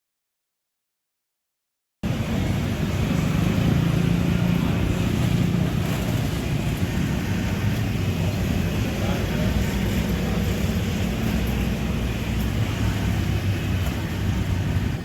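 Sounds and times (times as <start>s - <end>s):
road traffic noise: 2.0s - 15.0s.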